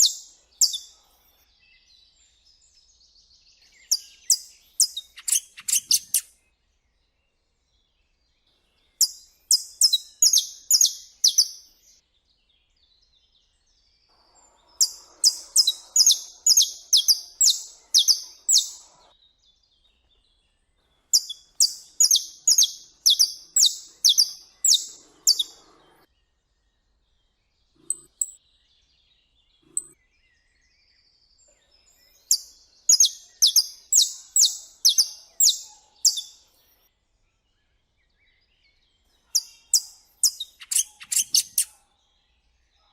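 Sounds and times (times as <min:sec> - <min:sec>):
finch singing high repeated notes: 0:00.0 - 0:01.0, 0:03.6 - 0:06.3, 0:09.0 - 0:12.0, 0:14.6 - 0:19.1, 0:21.1 - 0:26.1, 0:32.2 - 0:36.7, 0:39.3 - 0:41.7.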